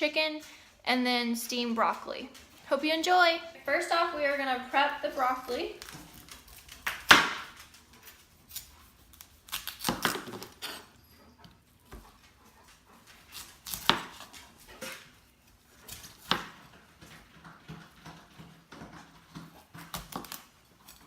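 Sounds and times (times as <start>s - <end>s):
knife chopping on cutting board: 13.4s - 15.0s, 15.9s - 16.6s.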